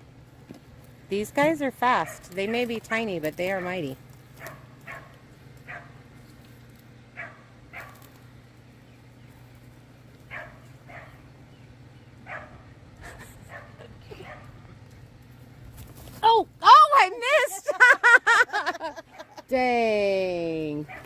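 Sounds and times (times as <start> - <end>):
steady low hum: 0.0 - 21.0
dog yipping and barking: 4.4 - 6.0, 7.2 - 8.0, 10.3 - 11.2, 12.2 - 14.5.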